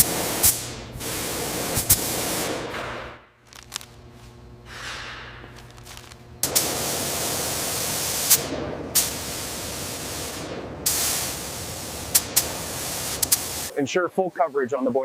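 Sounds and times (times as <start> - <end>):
compressed air hiss: 0.0 - 2.7, 4.7 - 13.7.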